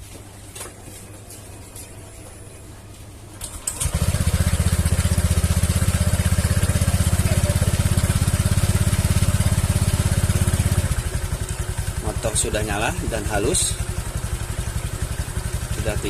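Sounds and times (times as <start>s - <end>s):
scooter engine starting and idling: 3.4s - 16.0s.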